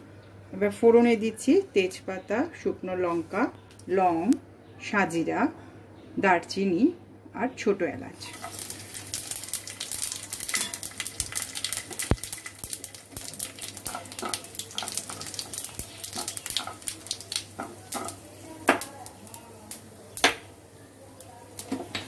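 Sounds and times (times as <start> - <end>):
spices sizzling in hot oil: 8.2 - 22.0
sharp pops: 10.7 - 20.6.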